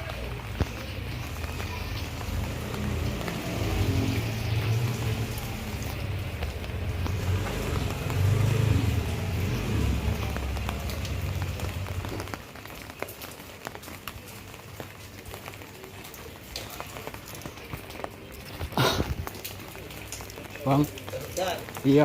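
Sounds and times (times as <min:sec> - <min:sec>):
steady rain: 0:00.0 - 0:22.0
water drips: 0:00.0 - 0:22.0.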